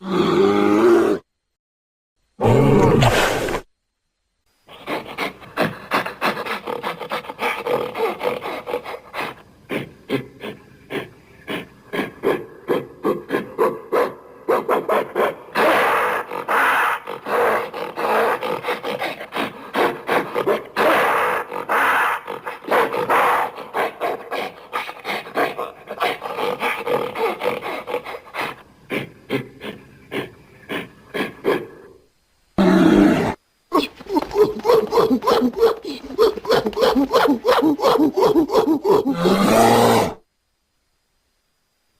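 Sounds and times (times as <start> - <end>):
animal grunting rapidly: 4.7 - 13.8, 15.0 - 31.8, 32.6 - 40.2.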